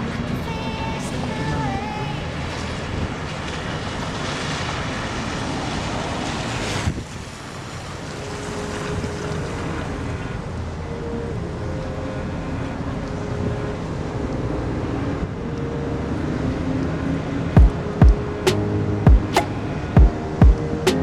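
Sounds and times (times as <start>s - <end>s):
rain: 2.0s - 10.6s
sharp knock: 19.1s - 21.0s.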